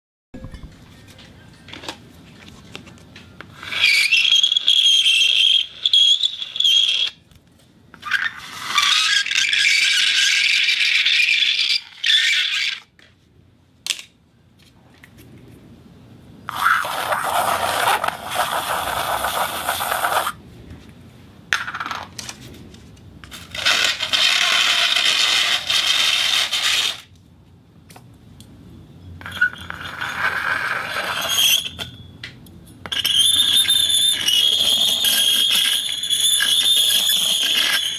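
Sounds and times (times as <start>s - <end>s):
high squeal: 3.5s - 7.2s, 8.0s - 12.9s, 29.0s - 32.2s, 32.8s - 37.9s
materials scraping on turntable: 16.5s - 20.4s, 33.0s - 37.9s.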